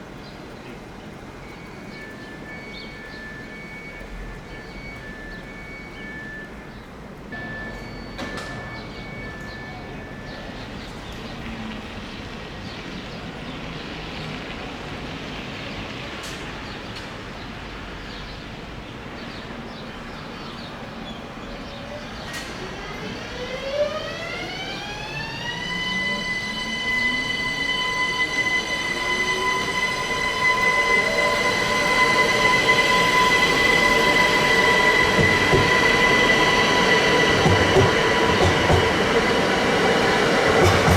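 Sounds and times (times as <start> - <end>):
locomotive cooling blowers whining: 0.0 - 11.0, 22.0 - 40.9
on-off beeping: 1.4 - 10.7, 23.0 - 40.9.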